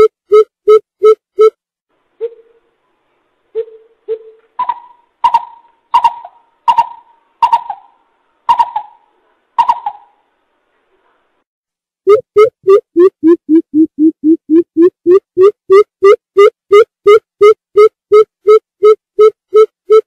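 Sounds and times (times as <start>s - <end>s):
coucal hooting: 3.6s - 10.2s.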